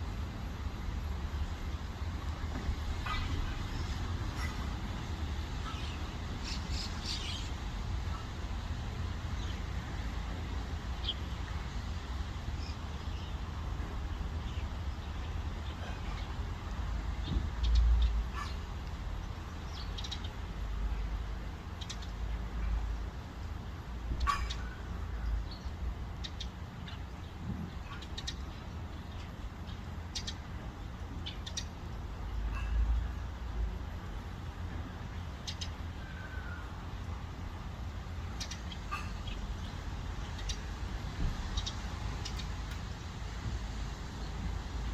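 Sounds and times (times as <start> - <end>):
birds chirping: 5.5 - 8.3, 24.1 - 33.3, 37.4 - 40.8, 41.4 - 42.7
short high bird calls: 24.2 - 24.8.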